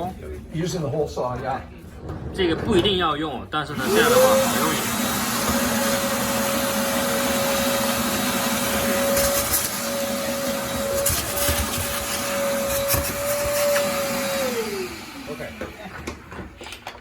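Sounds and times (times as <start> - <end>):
electric drill cutting wood: 3.7 - 16.2.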